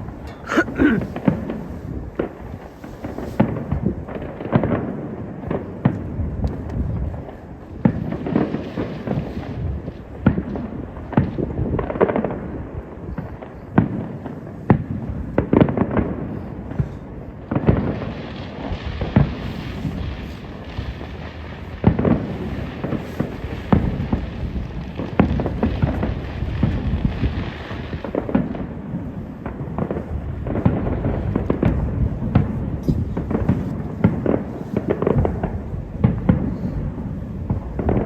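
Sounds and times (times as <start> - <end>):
fireworks hissing crackle: 0.0 - 10.3, 13.3 - 38.0
fireworks booming: 17.4 - 38.0.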